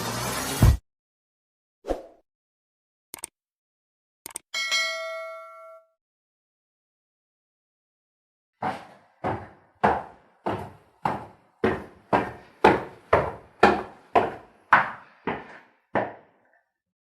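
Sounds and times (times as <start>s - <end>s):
footsteps on stairs: 8.6s - 16.6s.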